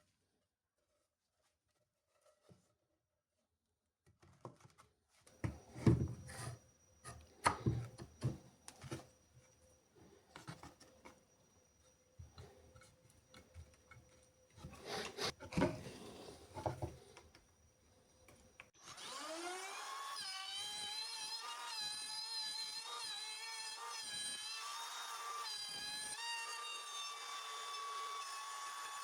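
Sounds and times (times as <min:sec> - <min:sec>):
electric power tool whining: 0:18.8 - 0:29.0.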